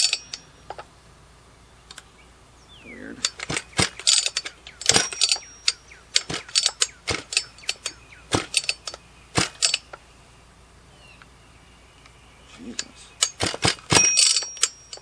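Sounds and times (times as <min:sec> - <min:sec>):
chainsaw recoil starter pulled: 0:03.2 - 0:10.0, 0:13.2 - 0:15.0.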